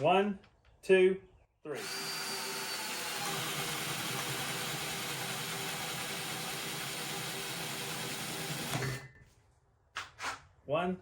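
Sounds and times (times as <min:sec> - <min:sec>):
drill bit chewing through wood: 0:01.7 - 0:09.0
drill motor whining under load: 0:01.8 - 0:09.0.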